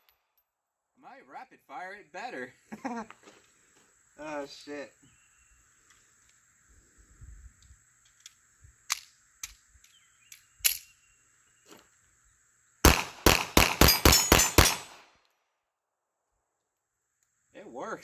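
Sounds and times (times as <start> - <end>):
pistol handling clicks: 8.1 - 10.9
rapid pistol shots: 12.8 - 15.1.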